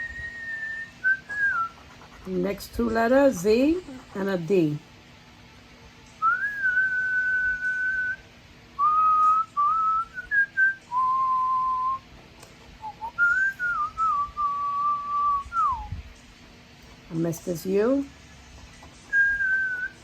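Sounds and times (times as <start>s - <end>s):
person whistling a slow tune: 0.0s - 1.8s, 6.2s - 8.2s, 8.8s - 12.0s, 12.8s - 16.0s, 19.1s - 20.0s.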